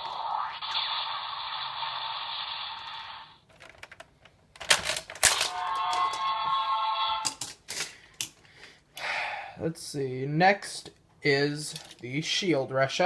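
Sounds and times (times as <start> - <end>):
toy speaker sound effect: 5.4 - 7.3
plastic toy clicks and clacks: 7.2 - 8.3.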